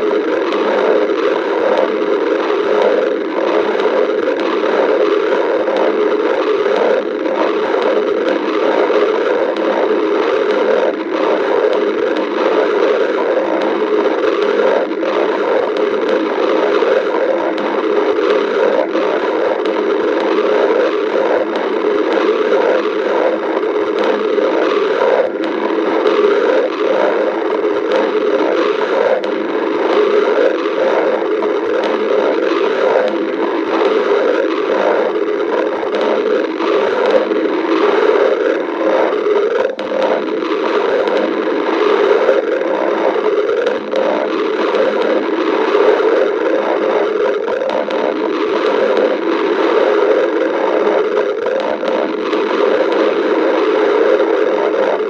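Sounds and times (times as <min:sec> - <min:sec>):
stomach growling and gurgling: 0:00.0 - 0:55.0.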